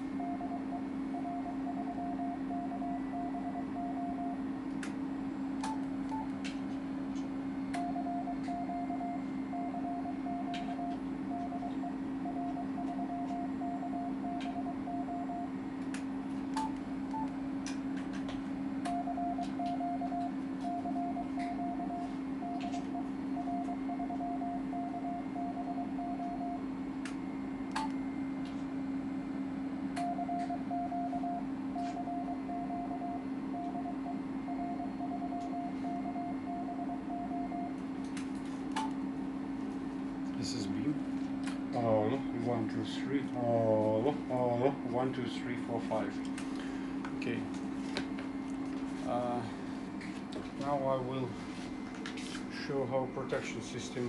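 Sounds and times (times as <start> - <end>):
steady low hum: 0.0 - 54.0
morse code beeping: 0.1 - 4.4, 7.8 - 15.5, 18.9 - 26.6, 30.0 - 37.8.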